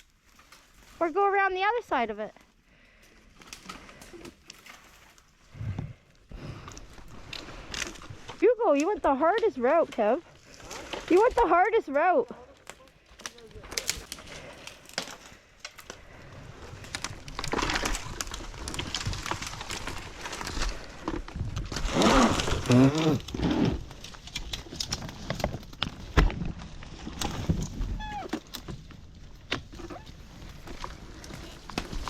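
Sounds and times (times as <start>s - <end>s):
branches rustling and snapping: 0.0s - 32.0s.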